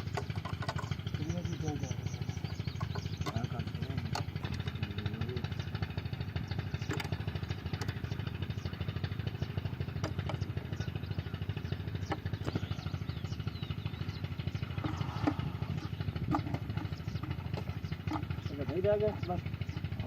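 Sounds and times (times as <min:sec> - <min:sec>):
sharp clicks and knocks: 0:00.0 - 0:01.1, 0:02.5 - 0:04.8, 0:06.8 - 0:08.1, 0:09.9 - 0:10.6, 0:14.8 - 0:18.6
diesel engine running: 0:00.0 - 0:20.0.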